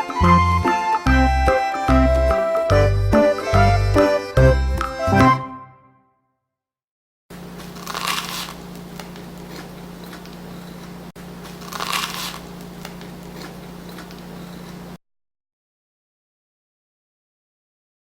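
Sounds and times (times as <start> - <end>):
low room hum: 7.3 - 15.0
crunchy bites into toast: 7.6 - 14.9.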